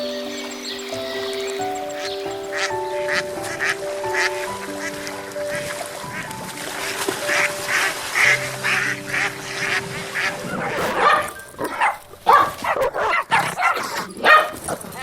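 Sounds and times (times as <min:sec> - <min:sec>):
music of long held notes: 0:00.0 - 0:10.8
animal calls: 0:00.0 - 0:15.0
ducks quacking: 0:00.0 - 0:15.0.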